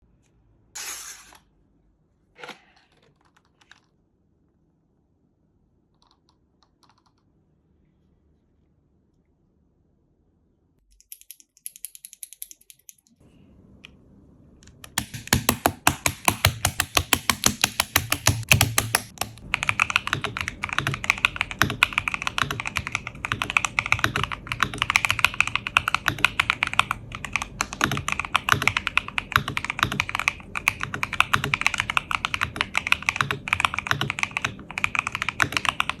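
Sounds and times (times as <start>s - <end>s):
mechanical keyboard typing: 14.9s - 36.0s.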